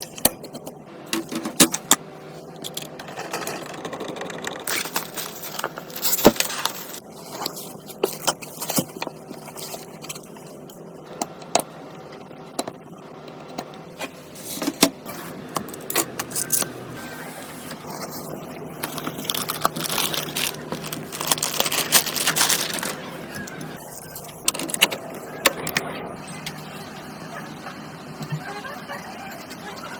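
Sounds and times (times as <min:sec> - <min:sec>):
computer parts clicking and clinking: 0:02.6 - 0:07.0, 0:15.5 - 0:16.8, 0:18.8 - 0:25.9.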